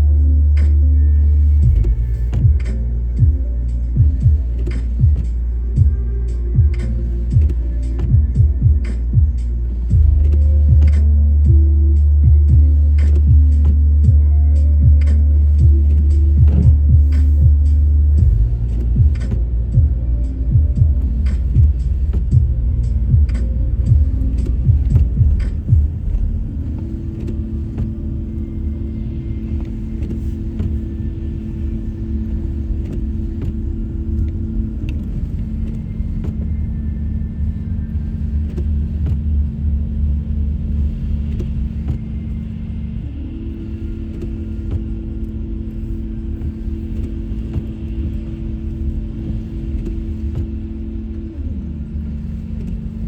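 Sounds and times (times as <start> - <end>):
car road and engine rumble: 0.0 - 53.0
steady hum: 0.0 - 53.0
sharp clicks and knocks: 14.9 - 36.7.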